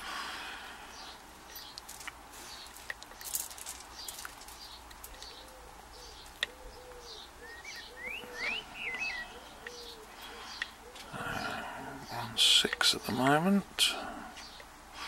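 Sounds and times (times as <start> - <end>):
small birds chirping: 0.0 - 15.0
dove cooing: 5.0 - 12.5.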